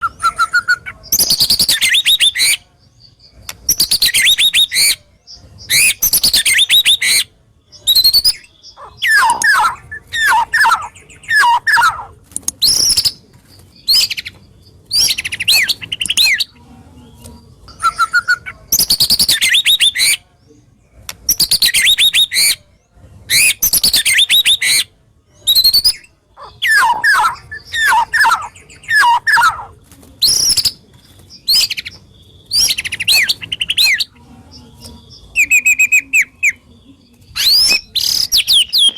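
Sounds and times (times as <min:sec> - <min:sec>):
bird singing rapid high notes: 0:00.0 - 0:02.6, 0:05.7 - 0:13.2, 0:23.3 - 0:30.8.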